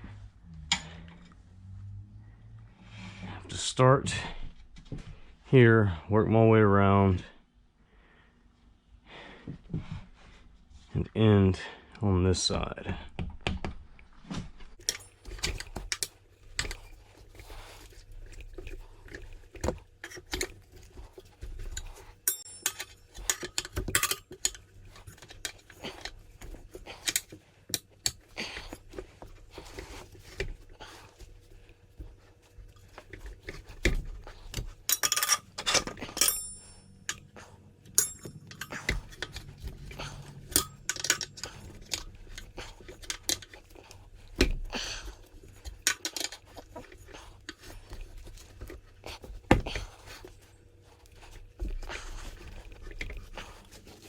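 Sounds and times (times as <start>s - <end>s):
ringing metallic clinks: 22.2s - 23.0s, 36.2s - 37.3s, 37.9s - 38.8s.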